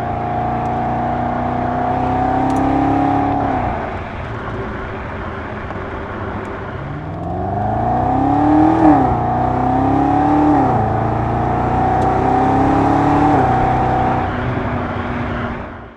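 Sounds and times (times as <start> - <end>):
car engine accelerating through gears: 0.0 - 15.9.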